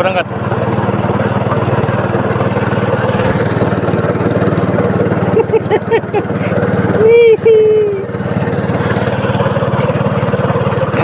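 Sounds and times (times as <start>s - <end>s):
small engine chugging: 0.0s - 11.0s.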